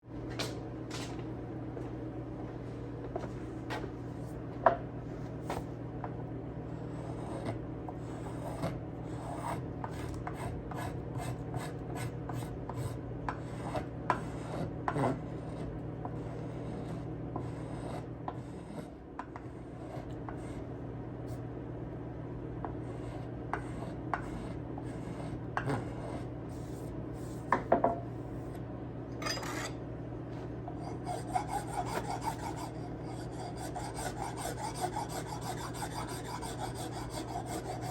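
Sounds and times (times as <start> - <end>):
steady low hum: 0.0 - 37.9
wood being rasped: 30.9 - 37.9.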